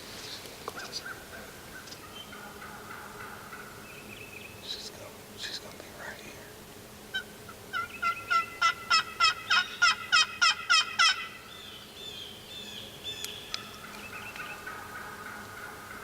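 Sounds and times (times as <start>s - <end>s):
small birds chirping: 0.1s - 16.0s
turkey yelps: 7.1s - 11.4s.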